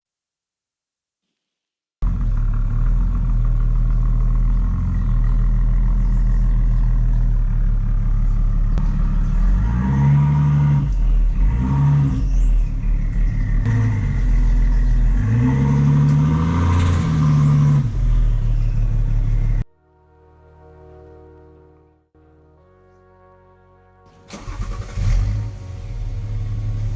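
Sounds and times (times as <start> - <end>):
diesel engine idling and revving: 2.0 - 19.6, 24.3 - 26.9.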